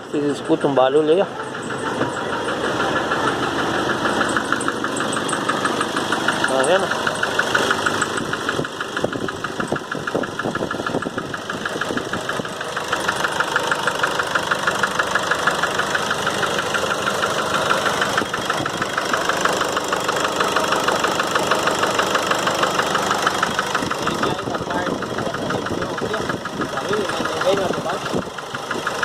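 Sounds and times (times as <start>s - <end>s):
diesel engine idling with knock: 0.0s - 29.0s.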